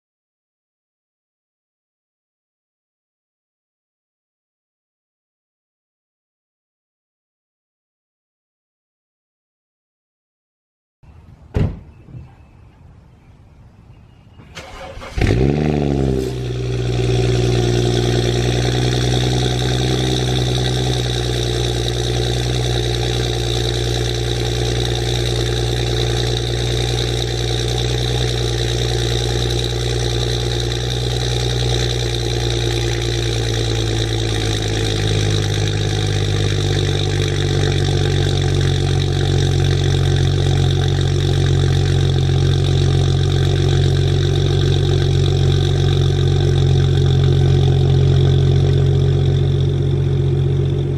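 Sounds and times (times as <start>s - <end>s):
car engine idling: 14.5s - 50.9s.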